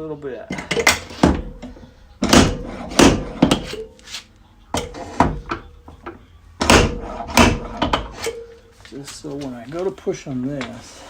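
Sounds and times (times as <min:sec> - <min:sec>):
hammer knocking on car panel: 0:02.2 - 0:03.6, 0:06.6 - 0:08.0.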